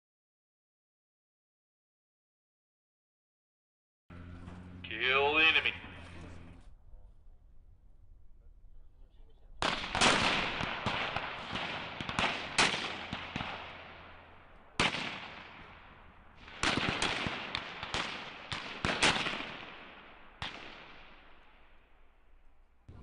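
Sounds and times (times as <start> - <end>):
rifle shots echoing: 9.6 - 22.7.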